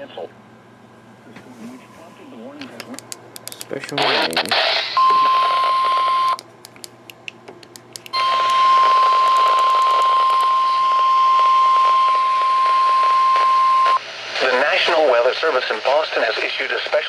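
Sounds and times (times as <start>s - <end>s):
faint clicks and hiss: 2.6s - 4.5s, 6.3s - 8.6s
steady warning alarm beep: 4.9s - 6.4s, 8.1s - 14.0s.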